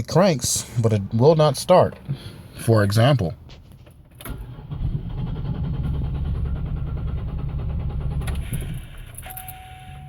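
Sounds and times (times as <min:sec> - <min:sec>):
car engine cranking on starter: 0:04.1 - 0:10.0.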